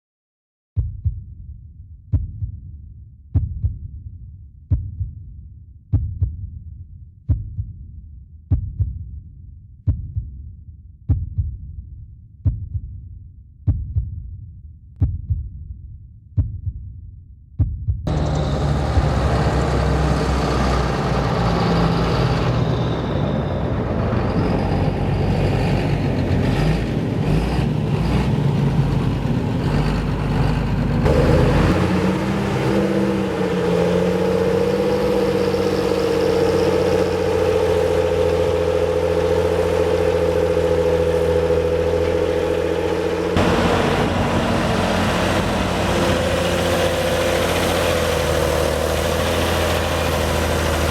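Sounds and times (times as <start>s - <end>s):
steady whine: 18.1s - 50.9s
tractor diesel engine working hard: 18.1s - 50.9s.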